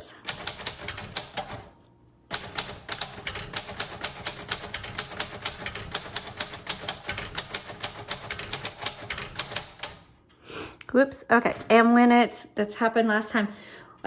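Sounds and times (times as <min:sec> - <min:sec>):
manual typewriter keystrokes: 0:00.2 - 0:10.2, 0:11.4 - 0:11.9.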